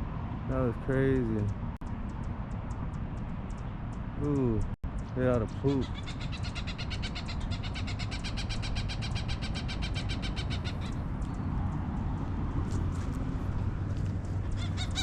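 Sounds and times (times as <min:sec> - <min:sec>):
bird chattering alarm call: 0:05.3 - 0:11.0.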